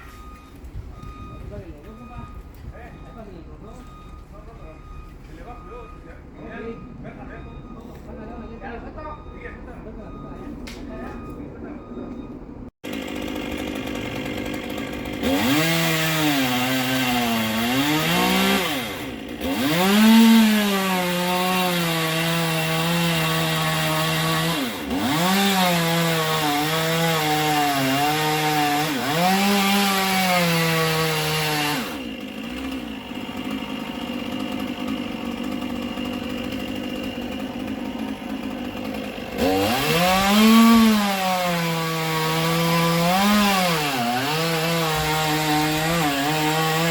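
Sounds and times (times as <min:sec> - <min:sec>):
chainsaw cutting wood: 0:12.8 - 0:46.9.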